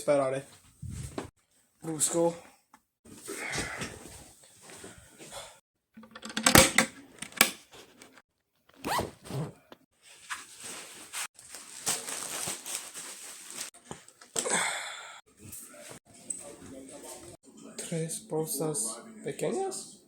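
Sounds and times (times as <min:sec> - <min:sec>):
bag zipper being pulled: 0:08.8 - 0:09.7.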